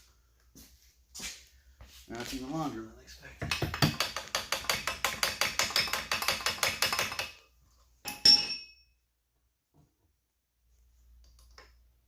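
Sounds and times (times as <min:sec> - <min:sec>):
tool tapping on metal: 0:03.4 - 0:07.4
sharp metallic clink: 0:08.1 - 0:08.9.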